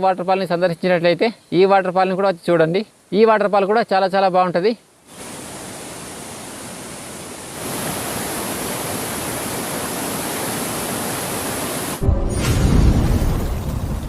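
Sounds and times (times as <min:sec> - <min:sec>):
waterfall rushing: 0:05.0 - 0:12.1
deep whooshing boom: 0:12.0 - 0:14.0.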